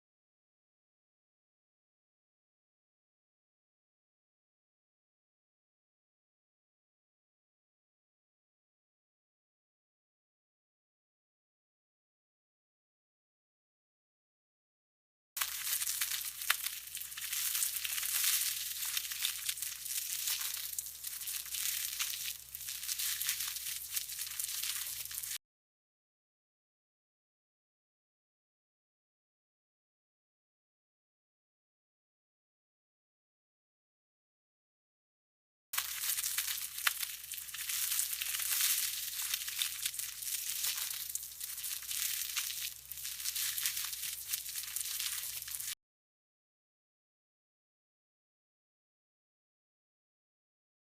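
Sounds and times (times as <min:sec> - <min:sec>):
salad greens crunching: 0:15.4 - 0:25.4, 0:35.8 - 0:45.8.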